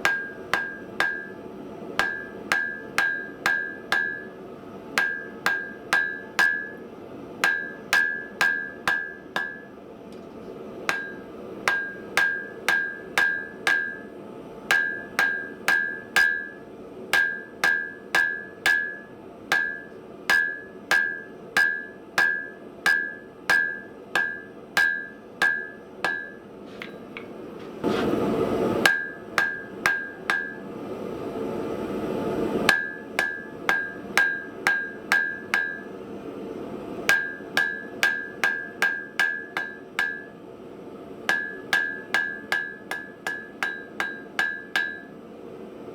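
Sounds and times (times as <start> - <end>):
hammer striking steel on anvil: 0.0 - 6.8, 7.4 - 28.2, 28.8 - 30.7, 32.7 - 36.0, 37.0 - 40.4, 41.2 - 45.2
anvil ringing: 10.9 - 14.1, 17.2 - 26.4, 32.7 - 35.9.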